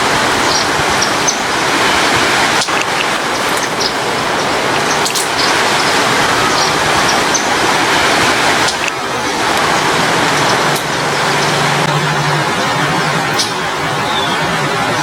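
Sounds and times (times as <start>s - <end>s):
heavy rain: 0.0s - 15.0s
low engine-like hum: 0.0s - 15.0s
bird chirps: 0.4s - 1.6s, 2.5s - 7.6s, 13.3s - 14.5s.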